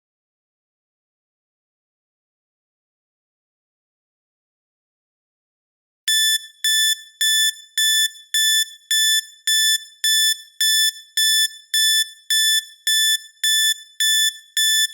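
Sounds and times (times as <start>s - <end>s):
high-pitched timer alarm beeps: 6.1s - 14.9s.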